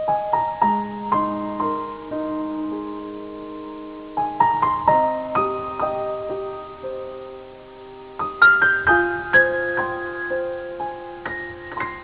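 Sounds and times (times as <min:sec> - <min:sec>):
slow gentle piano melody: 0:00.0 - 0:12.0.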